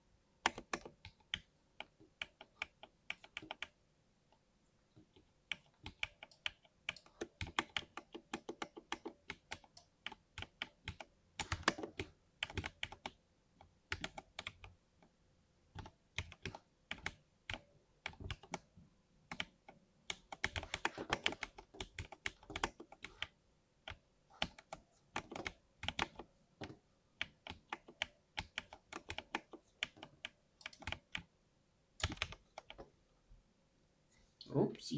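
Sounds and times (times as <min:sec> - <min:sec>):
mechanical keyboard typing: 0:00.4 - 0:03.8, 0:05.5 - 0:13.2, 0:13.9 - 0:14.7, 0:15.8 - 0:18.7, 0:19.3 - 0:26.3, 0:27.2 - 0:31.3, 0:32.0 - 0:32.8.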